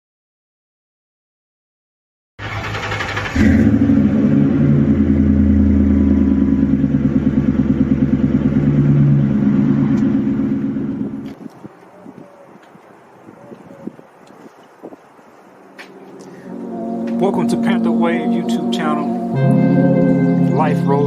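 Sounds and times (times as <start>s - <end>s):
car engine running: 2.6s - 11.3s.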